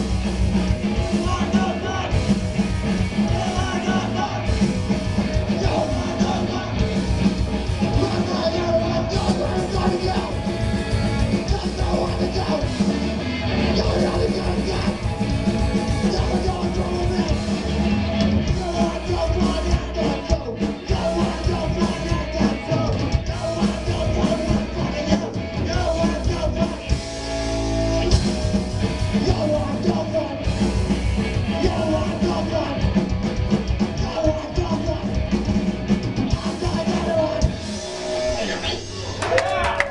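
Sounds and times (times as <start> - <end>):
drum kit: 0.0 - 39.9
guitars: 0.0 - 39.9
live rock band playing: 0.0 - 39.9
person singing: 1.0 - 2.3, 3.2 - 4.6, 5.4 - 7.1, 7.8 - 10.4, 11.2 - 13.0, 13.6 - 15.1, 15.9 - 17.4, 18.5 - 27.0.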